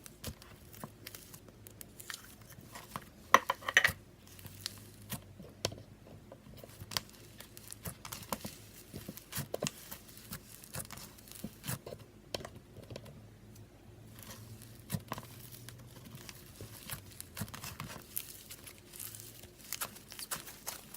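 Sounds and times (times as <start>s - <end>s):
slime crackling and popping: 0.0s - 3.3s, 4.2s - 5.2s, 6.7s - 11.8s, 14.1s - 20.9s.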